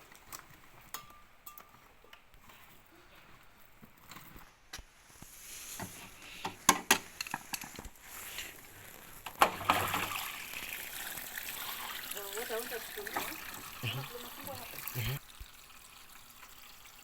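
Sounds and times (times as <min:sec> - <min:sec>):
parts clicking and knocking: 0:05.8 - 0:08.0
water rushing: 0:09.4 - 0:15.4.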